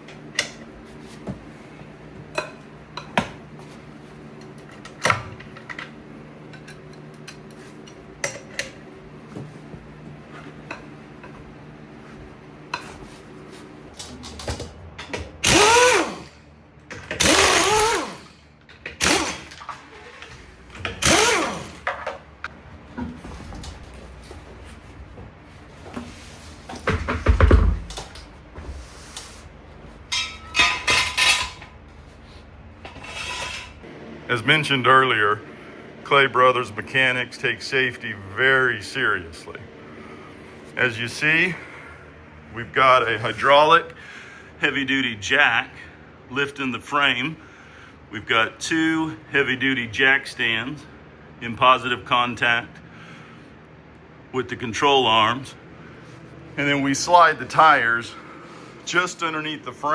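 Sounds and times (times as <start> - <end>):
loud creaking strokes: 32.8 - 33.8.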